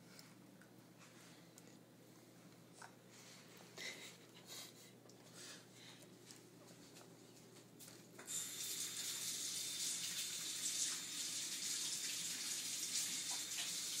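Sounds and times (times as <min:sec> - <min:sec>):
water running from a tap: 0:08.3 - 0:14.0.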